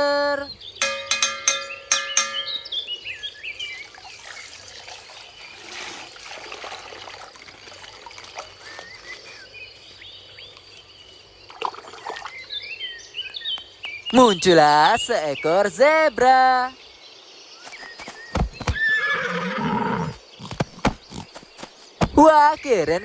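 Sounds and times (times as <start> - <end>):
water trickling and pouring: 3.0 - 10.0, 10.6 - 12.5.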